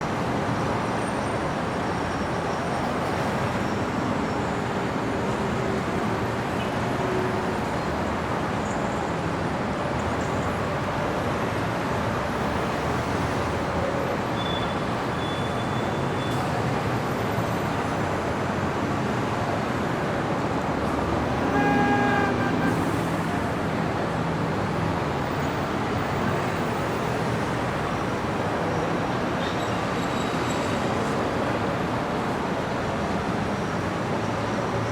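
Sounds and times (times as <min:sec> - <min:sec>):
city street traffic: 0:00.0 - 0:34.9
vehicle horn honking: 0:21.2 - 0:23.4.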